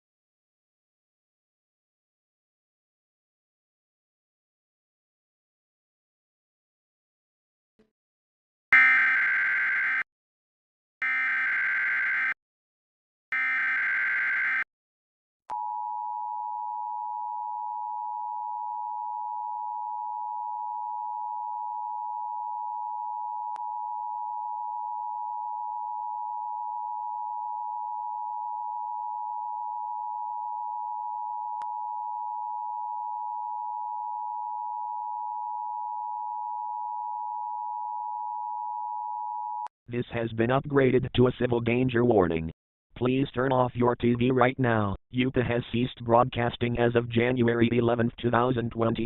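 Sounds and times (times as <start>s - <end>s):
steady electronic alert tone: 8.8s - 10.0s, 13.3s - 14.6s.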